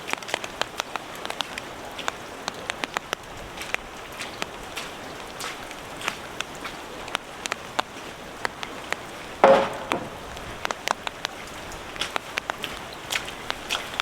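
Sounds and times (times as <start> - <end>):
sharp water drips: 0.0 - 14.0
steady rain: 0.0 - 14.0
loud knock: 9.4 - 10.3.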